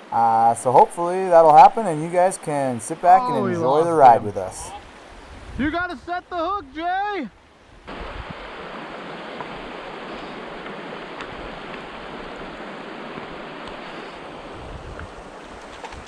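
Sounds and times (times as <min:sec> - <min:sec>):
stream water running: 0:07.5 - 0:16.0.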